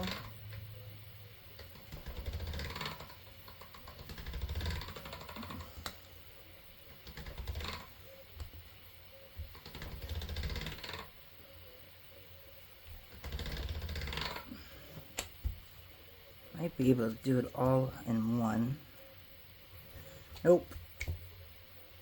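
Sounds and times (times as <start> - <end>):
clay and tools clicking on tabletop: 1.5 - 6.0, 6.9 - 8.6, 9.4 - 11.2.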